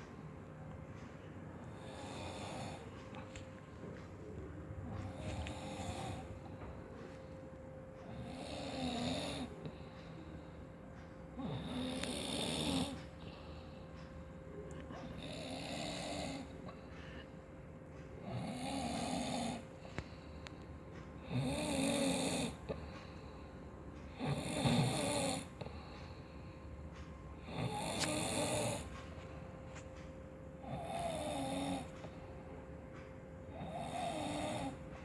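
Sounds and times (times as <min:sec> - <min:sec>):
person snoring: 0:01.8 - 0:02.9, 0:05.0 - 0:06.3, 0:08.1 - 0:09.8, 0:11.4 - 0:13.0, 0:15.2 - 0:16.5, 0:18.2 - 0:19.6, 0:24.2 - 0:25.5, 0:27.4 - 0:28.9, 0:30.6 - 0:31.9, 0:33.5 - 0:34.8.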